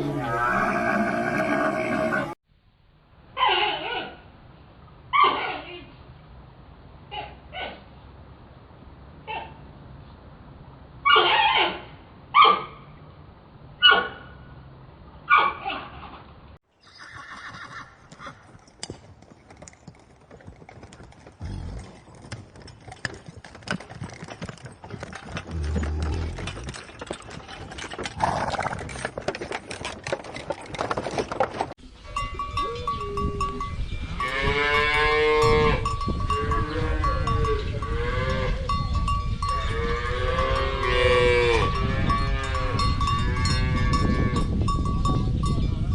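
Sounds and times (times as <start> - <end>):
clicks and rustling: 22.0 - 31.8
bell ringing: 32.1 - 38.0
farm animals bleating: 39.6 - 44.4.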